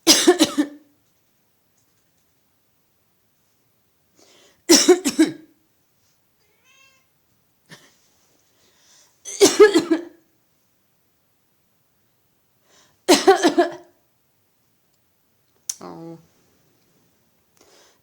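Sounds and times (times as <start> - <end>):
person coughing: 0.1 - 0.8, 4.7 - 5.5, 9.3 - 10.2, 13.1 - 13.9
cat meowing: 6.4 - 7.1.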